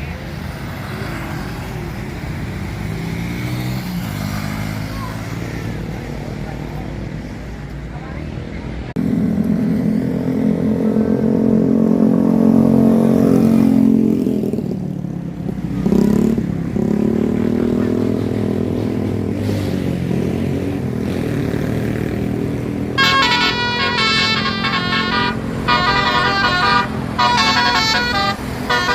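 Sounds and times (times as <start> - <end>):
bus engine passing: 0.0 - 28.9
multi-tone musical bus horn: 23.0 - 28.9.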